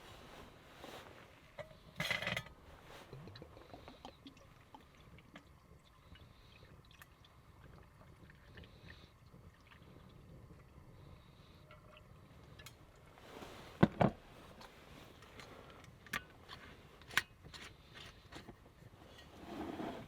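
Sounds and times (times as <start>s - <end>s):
objects knocking and clattering: 1.6s - 2.6s.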